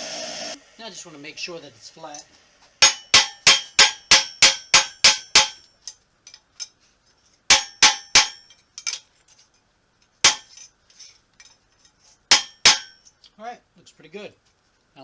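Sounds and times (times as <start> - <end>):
hammer striking steel plate: 2.1 - 5.6, 7.5 - 8.5, 10.3 - 10.6, 12.3 - 13.0.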